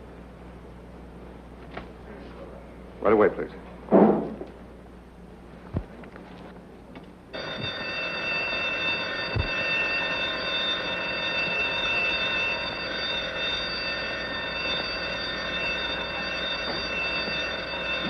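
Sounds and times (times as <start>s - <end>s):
electric alarm bell ringing: 7.3s - 18.0s.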